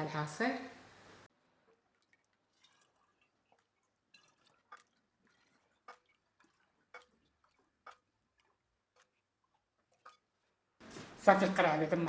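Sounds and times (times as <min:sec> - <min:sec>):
liquid dripping into a bottle: 0:01.7 - 0:10.6.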